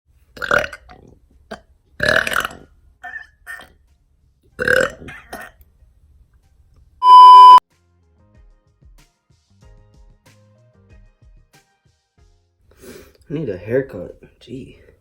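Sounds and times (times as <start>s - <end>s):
person burping loudly: 0.4s - 1.0s, 2.0s - 2.6s, 4.6s - 5.5s.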